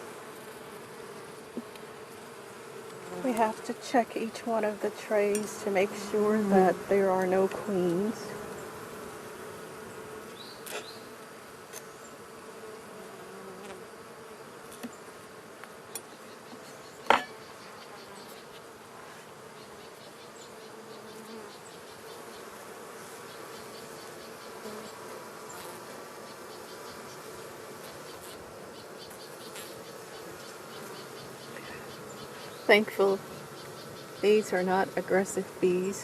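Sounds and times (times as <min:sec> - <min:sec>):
bees buzzing: 0:00.0 - 0:36.0
sharp knocks: 0:17.0 - 0:17.4.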